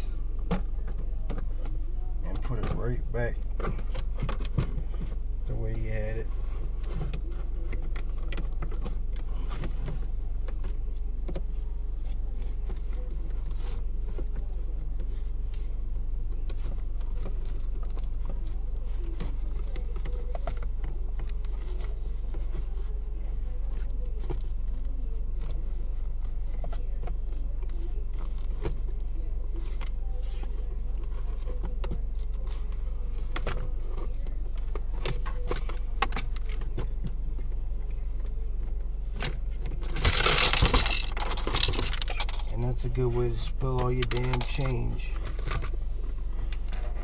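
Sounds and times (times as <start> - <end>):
steady low hum: 0.0 - 47.0
coins spilling and jingling: 39.9 - 42.5.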